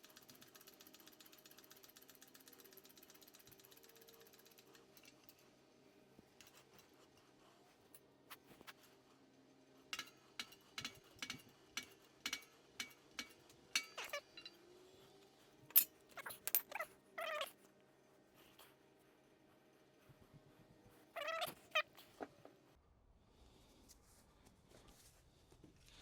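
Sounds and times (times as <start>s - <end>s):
metallic clicks of hand tools: 10.0s - 14.6s
short wavering squeals: 13.9s - 15.1s.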